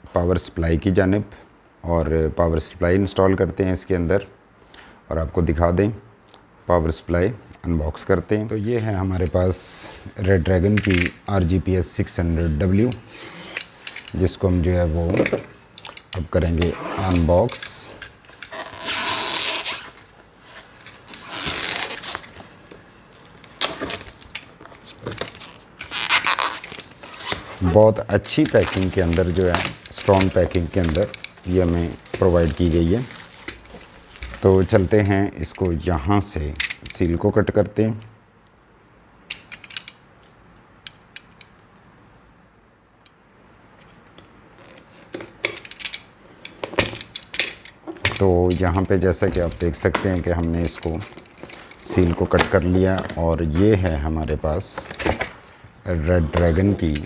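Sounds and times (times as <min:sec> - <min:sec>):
crackling and rustling: 0:08.6 - 0:35.8
blade cutting tape: 0:18.4 - 0:22.3.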